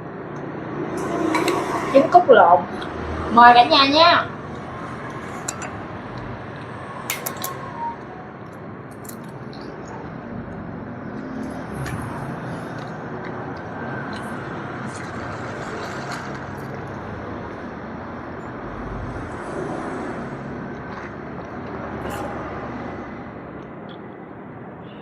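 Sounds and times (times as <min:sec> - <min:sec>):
tableware clicks: 0:05.4 - 0:05.8, 0:07.1 - 0:07.9.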